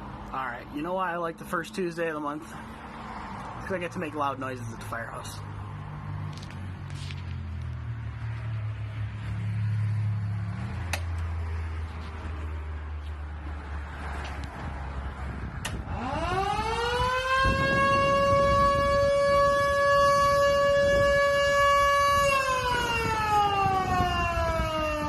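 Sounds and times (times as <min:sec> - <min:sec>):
warning siren winding: 0:15.6 - 0:25.0.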